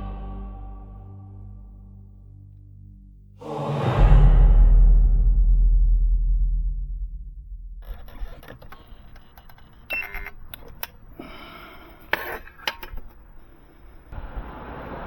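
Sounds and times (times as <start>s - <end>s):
deep music note: 0.0s - 7.8s.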